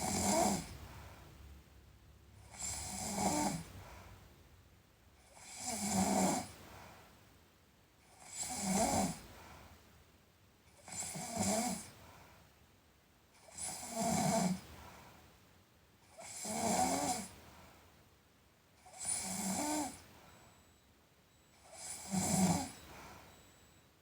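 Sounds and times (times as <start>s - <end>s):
person snoring: 0.0s - 0.7s, 21.7s - 22.8s.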